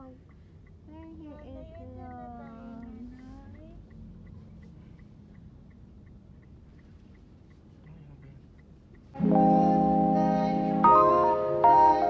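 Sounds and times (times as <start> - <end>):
turn signal ticking: 0.0 - 12.0
loud keyboard music: 9.2 - 12.0.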